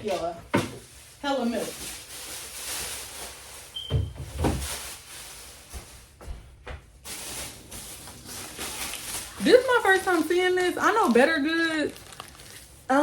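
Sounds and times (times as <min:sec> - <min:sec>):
groceries rustling: 0:00.0 - 0:13.0
knocks and thumps: 0:03.9 - 0:04.7.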